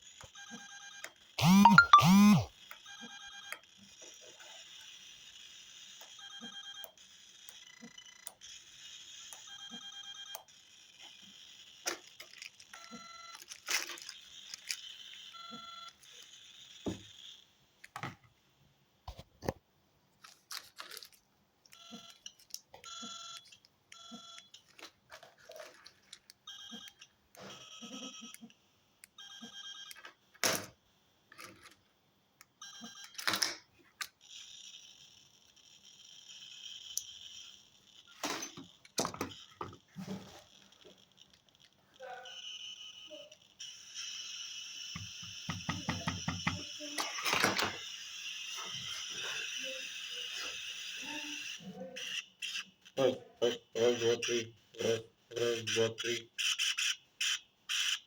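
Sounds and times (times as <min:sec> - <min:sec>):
short high electronic beeps: 0:01.4 - 0:02.5
radio hiss from small speaker: 0:45.8 - 0:56.6.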